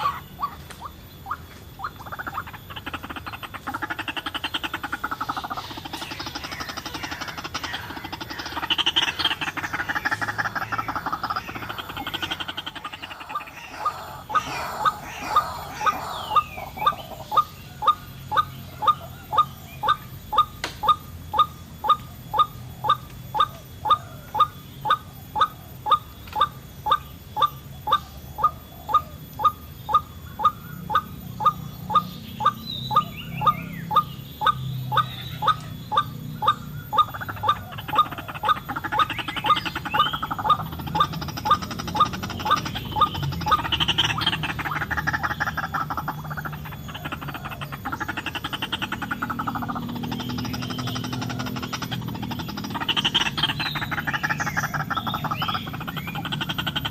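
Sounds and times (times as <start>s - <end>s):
waterhen calling: 0.0s - 56.9s.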